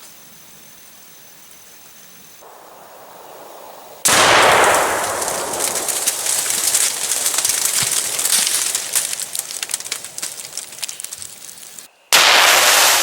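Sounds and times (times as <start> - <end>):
loud explosion blast: 2.4 - 7.3
explosion echo: 2.4 - 11.0
crackles of falling debris: 4.0 - 13.0.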